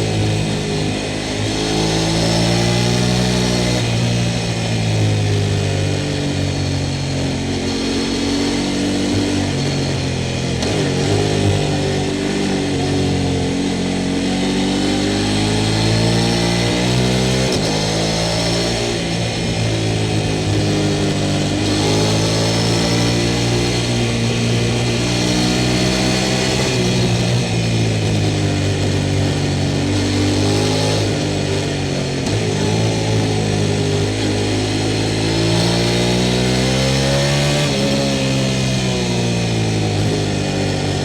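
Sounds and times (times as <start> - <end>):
motorcycle engine revving: 0.0 - 41.0.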